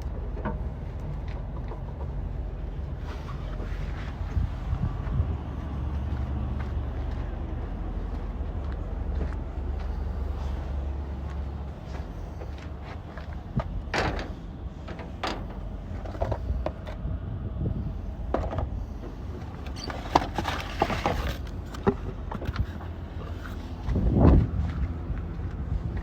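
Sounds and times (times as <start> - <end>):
loud low rumble: 0.0 - 18.9
steady low hum: 0.0 - 26.0.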